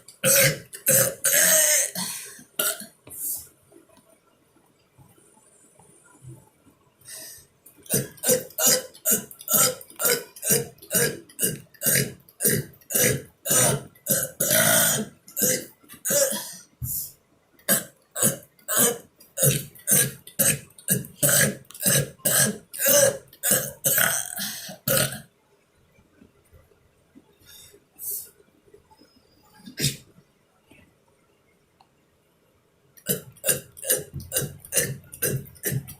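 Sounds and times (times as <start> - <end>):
person burping: 0.1 - 3.0, 7.8 - 17.0, 17.7 - 25.3, 29.7 - 30.0, 33.0 - 35.9.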